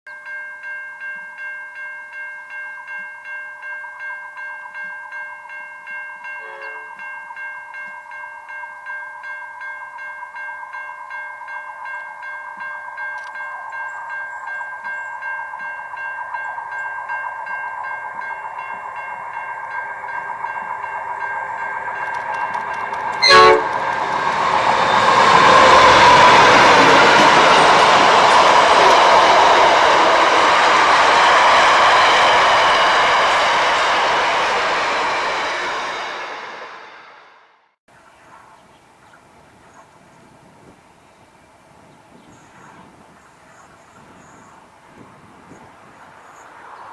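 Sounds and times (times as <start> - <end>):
level crossing bell ringing: 5.9 - 8.0, 10.9 - 31.6
train rumbling past: 15.6 - 37.6, 43.4 - 46.9
train horn blast: 21.5 - 35.2.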